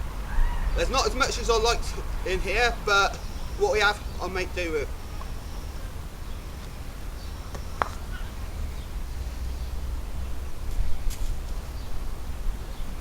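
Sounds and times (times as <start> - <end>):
faint bird calls: 0.0 - 12.0
wind on microphone: 7.9 - 13.0.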